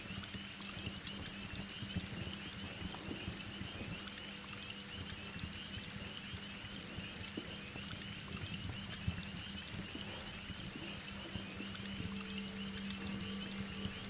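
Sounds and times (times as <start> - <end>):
low steady tone: 9.7 - 14.0.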